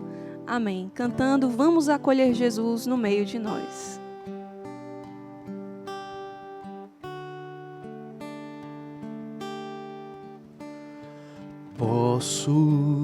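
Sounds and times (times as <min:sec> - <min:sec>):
acoustic guitar strumming chords: 0:00.0 - 0:13.0
person singing: 0:11.8 - 0:13.0.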